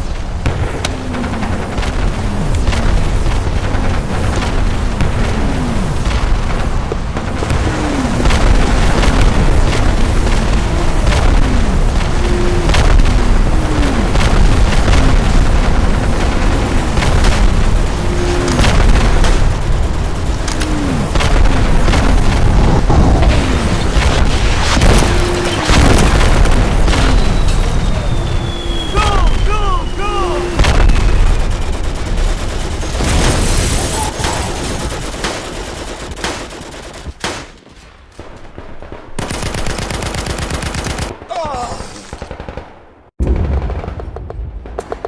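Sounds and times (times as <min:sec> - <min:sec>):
artillery barrage rumbling: 0:00.0 - 0:45.0
gunshots cracking: 0:00.0 - 0:45.0
shells whistling down: 0:27.0 - 0:31.4.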